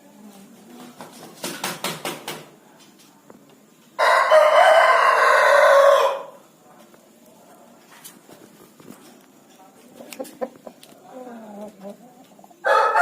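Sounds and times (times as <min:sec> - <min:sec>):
rooster crowing: 0:04.0 - 0:06.4, 0:12.6 - 0:13.0.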